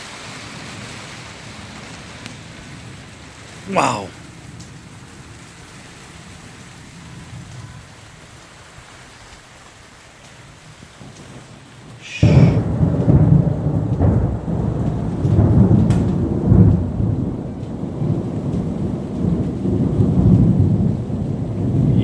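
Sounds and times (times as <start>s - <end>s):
light rain: 0.0s - 22.0s
thunder crack and rumbling: 12.1s - 22.0s.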